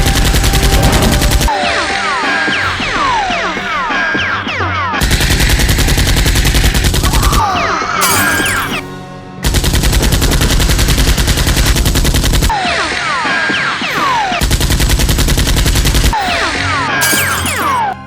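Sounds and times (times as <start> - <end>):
rapid automatic gunfire: 0.0 - 1.6, 5.0 - 7.4, 9.4 - 13.0, 13.9 - 16.4.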